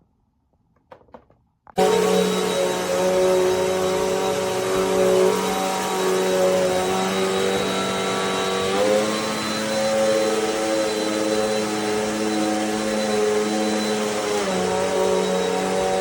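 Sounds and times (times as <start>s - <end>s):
upright vacuum cleaner running: 1.8s - 16.0s.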